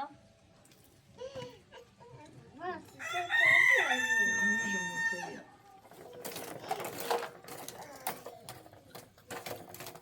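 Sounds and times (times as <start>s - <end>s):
rooster crowing: 3.0s - 5.4s.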